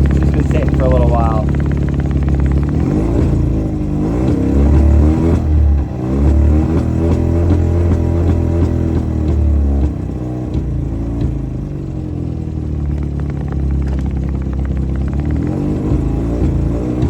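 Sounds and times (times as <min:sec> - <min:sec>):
outboard engine running: 0:00.0 - 0:17.0.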